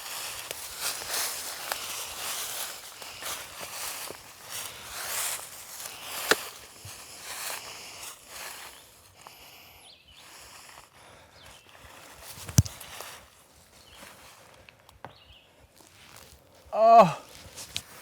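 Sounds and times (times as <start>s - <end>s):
footsteps with rustling underfoot: 0.0s - 8.9s, 11.5s - 14.6s, 15.8s - 18.0s.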